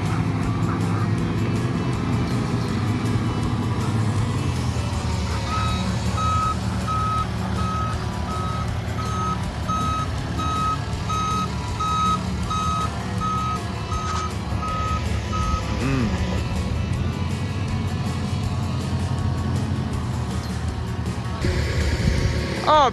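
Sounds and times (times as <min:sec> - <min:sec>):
engine running: 0:00.0 - 0:22.9
vehicle reverse alarm beeping: 0:05.0 - 0:15.9.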